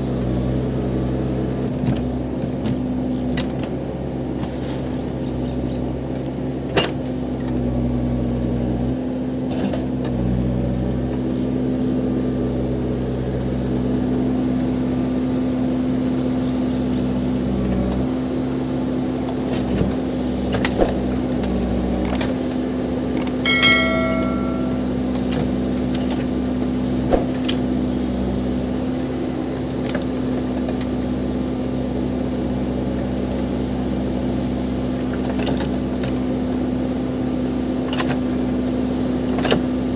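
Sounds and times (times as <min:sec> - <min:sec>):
metallic ring: 0:23.5 - 0:25.1.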